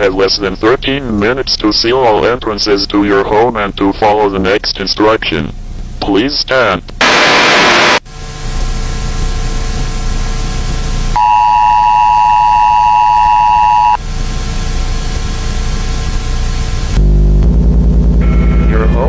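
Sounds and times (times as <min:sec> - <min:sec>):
burst of static: 0:06.1 - 0:11.5
low drone with hiss: 0:14.0 - 0:19.0.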